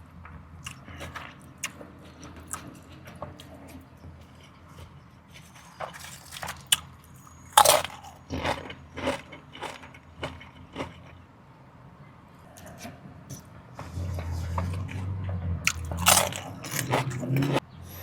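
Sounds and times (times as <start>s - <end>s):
wet crunchy chewing: 0.6s - 11.2s, 15.6s - 17.6s
crunchy bite: 5.9s - 6.9s, 7.5s - 11.2s, 15.6s - 17.6s.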